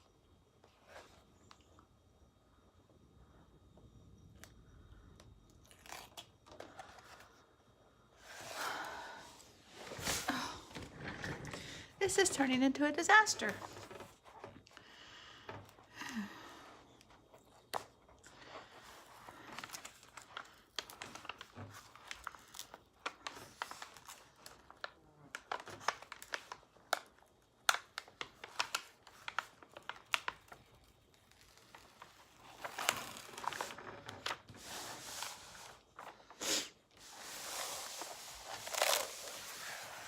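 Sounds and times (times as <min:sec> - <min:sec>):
plastic film crinkling: 0:05.6 - 0:07.2, 0:17.1 - 0:36.3, 0:37.0 - 0:40.0.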